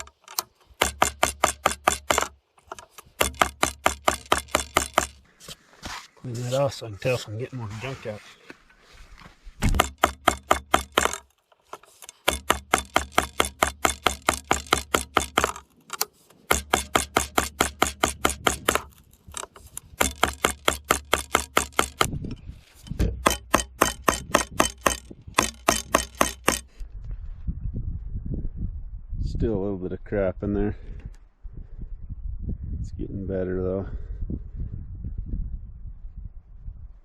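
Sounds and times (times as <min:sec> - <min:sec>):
rapid sharp tapping: 0:00.8 - 0:05.2, 0:09.6 - 0:15.6, 0:16.5 - 0:18.9, 0:23.2 - 0:26.7.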